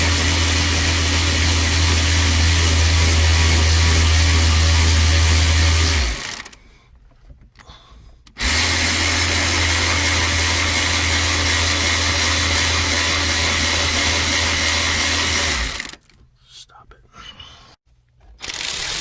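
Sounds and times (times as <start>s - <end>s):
cordless drill running: 0.0s - 6.6s, 8.4s - 16.0s, 18.4s - 19.0s.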